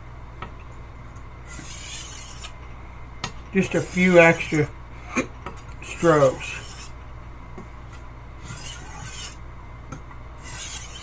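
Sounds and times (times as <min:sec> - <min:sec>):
knife scraping on whetstone: 0:01.5 - 0:02.6, 0:03.6 - 0:04.7, 0:05.8 - 0:07.0, 0:08.4 - 0:09.4, 0:10.4 - 0:11.0.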